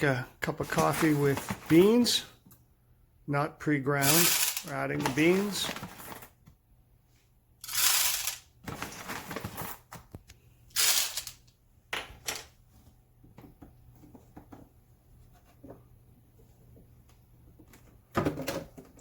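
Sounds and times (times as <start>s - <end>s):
coffee beans rattling into hopper: 4.0s - 6.2s, 7.6s - 9.8s, 10.8s - 11.4s.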